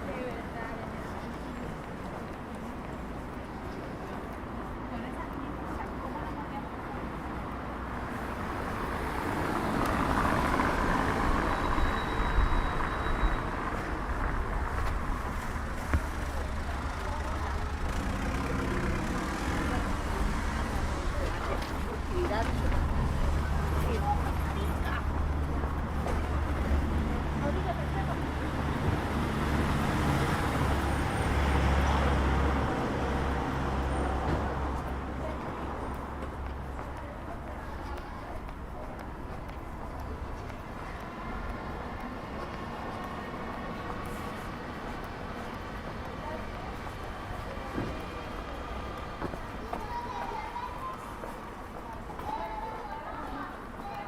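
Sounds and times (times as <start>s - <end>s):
car passing on wet street: 7.9s - 36.7s.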